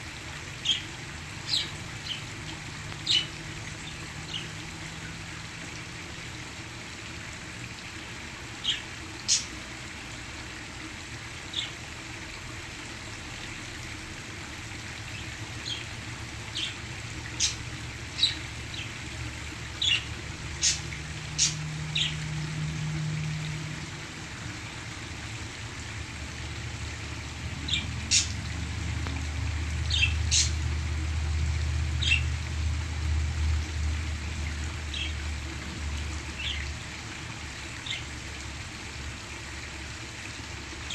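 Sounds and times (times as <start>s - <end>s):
waterfall rushing: 14.0s - 39.0s
parakeets chirping: 19.8s - 22.2s, 29.9s - 30.6s, 32.0s - 32.2s.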